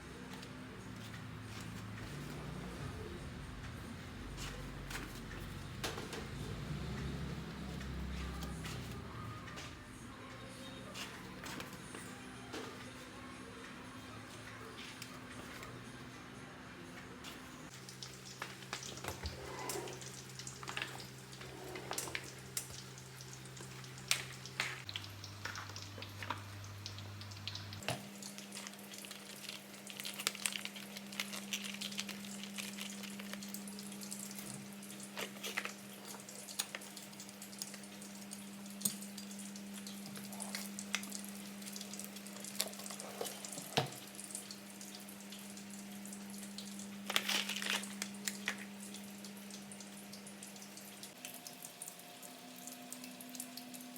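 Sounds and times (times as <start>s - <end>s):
water running and dripping: 17.7s - 53.9s.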